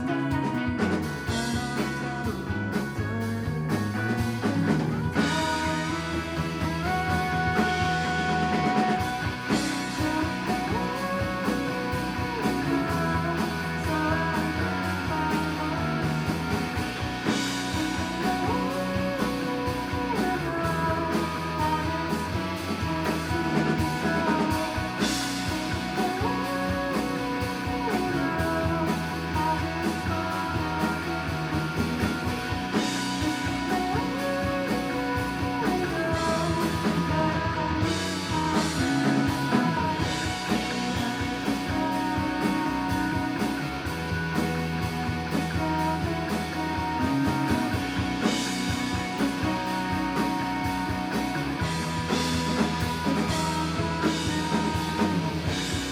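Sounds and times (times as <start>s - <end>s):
rock band playing live: 0.0s - 55.9s.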